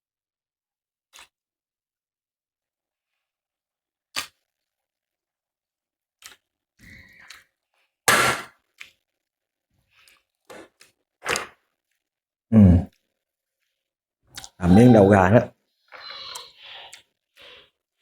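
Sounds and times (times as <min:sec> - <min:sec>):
crunchy chewing close up: 0:14.3 - 0:14.6.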